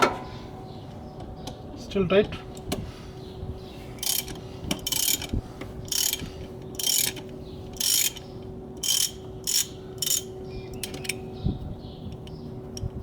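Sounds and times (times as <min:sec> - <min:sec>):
ratchet wrench clicking: 0:04.0 - 0:05.3, 0:05.9 - 0:07.2, 0:07.8 - 0:08.2, 0:08.8 - 0:11.2.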